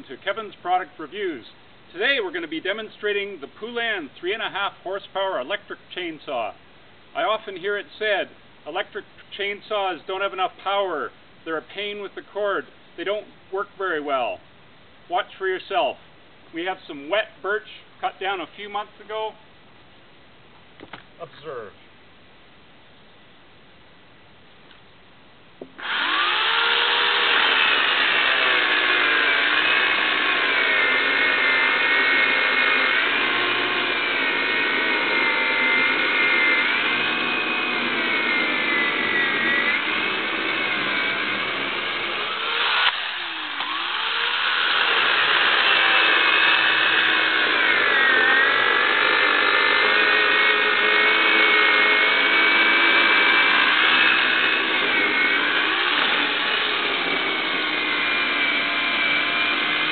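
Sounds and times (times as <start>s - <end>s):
electric chainsaw cutting wood: 25.8s - 59.9s.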